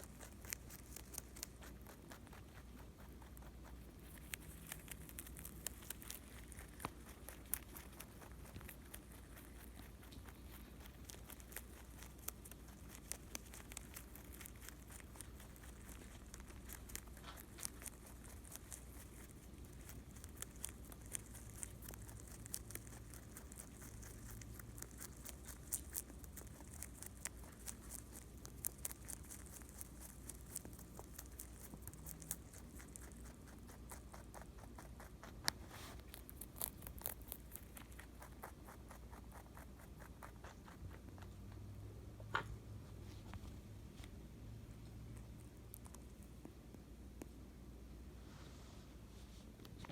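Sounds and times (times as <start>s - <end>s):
rabbit chewing dry food: 0.0s - 48.2s.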